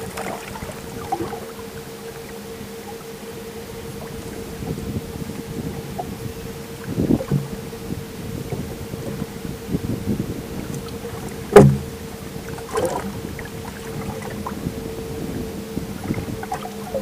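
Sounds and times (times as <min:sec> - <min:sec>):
boat engine hum: 0:00.0 - 0:17.0
loud knock: 0:11.5 - 0:11.9.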